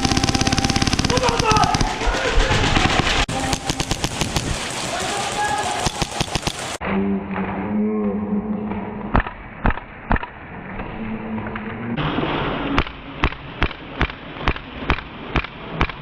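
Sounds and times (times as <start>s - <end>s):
airsoft gun shots: 0.0s - 2.1s, 2.8s - 4.6s, 5.6s - 6.8s.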